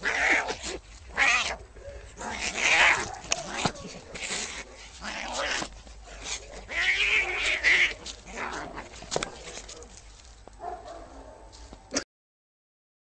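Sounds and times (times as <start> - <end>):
cat hissing and growling: 0.0 - 9.9.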